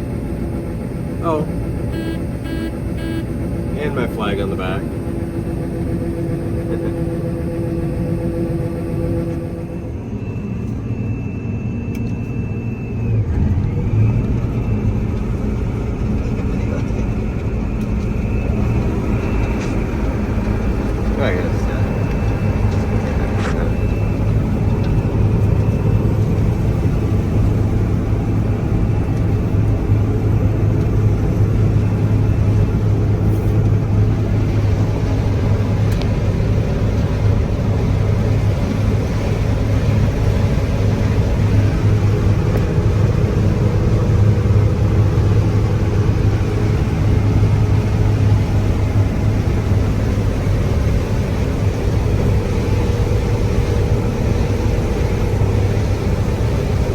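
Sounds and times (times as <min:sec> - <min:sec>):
combine engine hum: 0:00.0 - 0:56.9.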